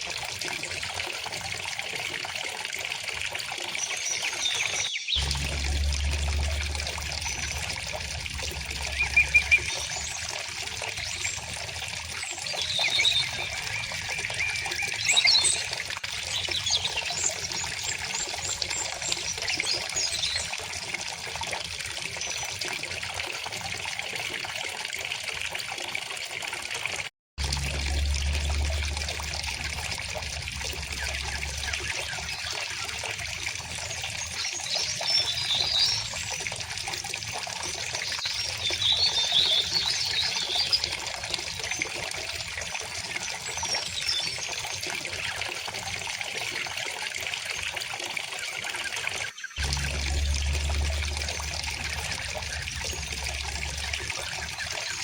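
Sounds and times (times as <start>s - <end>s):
river water flowing: 3.9s - 15.8s, 27.4s - 37.4s, 49.6s - 55.0s
small birds chirping: 8.6s - 20.6s.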